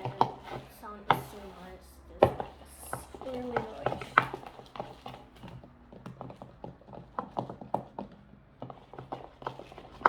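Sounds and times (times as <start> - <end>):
slime mixture squelching: 0.0 - 10.0.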